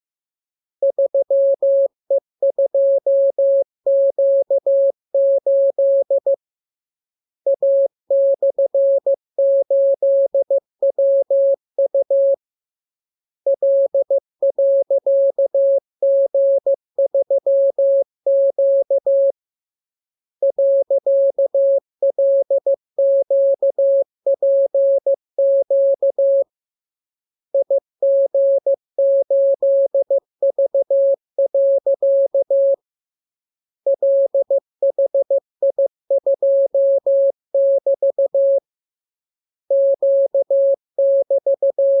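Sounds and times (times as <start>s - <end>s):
morse code tone: 41.1s - 42.0s.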